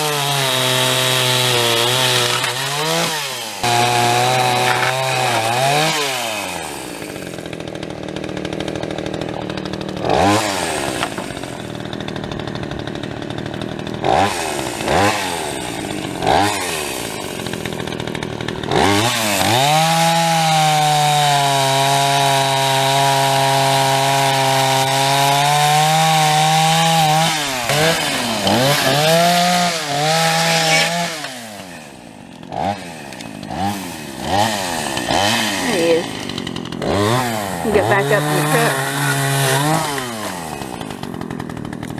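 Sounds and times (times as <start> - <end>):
chainsaw cutting through wood: 0.0 - 41.9
chainsaw revving: 0.0 - 41.9.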